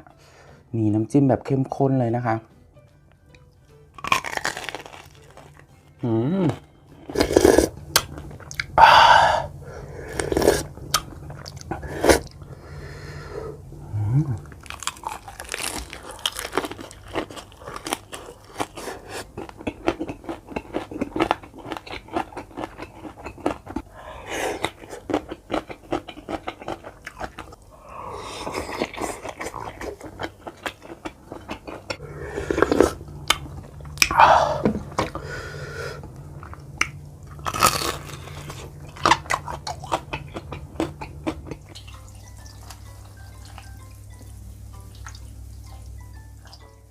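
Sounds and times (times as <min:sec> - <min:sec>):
close chewing and biting: 0:04.0 - 0:08.8, 0:14.4 - 0:35.2, 0:36.0 - 0:43.7.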